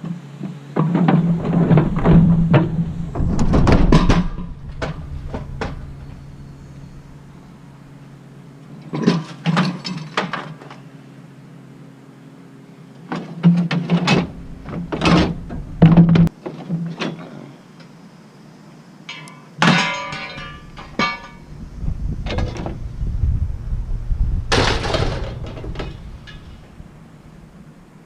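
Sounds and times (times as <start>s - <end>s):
steady low hum: 0.2s - 16.4s, 17.5s - 28.0s
scrap metal clanking: 0.9s - 7.7s, 19.1s - 21.6s, 24.5s - 26.8s.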